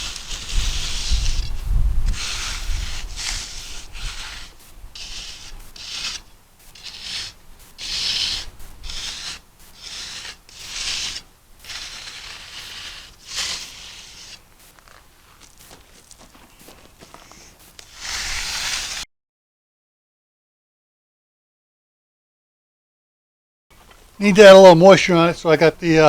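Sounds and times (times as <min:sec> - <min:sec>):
float rasping across concrete: 0:00.0 - 0:19.1.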